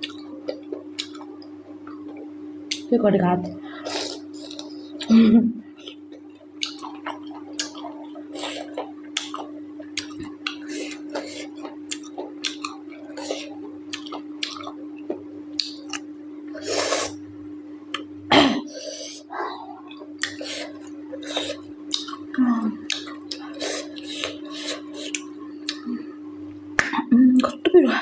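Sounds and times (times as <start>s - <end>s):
close chewing and mouth sounds: 0.0s - 2.9s, 3.8s - 5.1s, 5.8s - 16.1s, 19.6s - 25.9s
steady low hum: 0.0s - 28.0s.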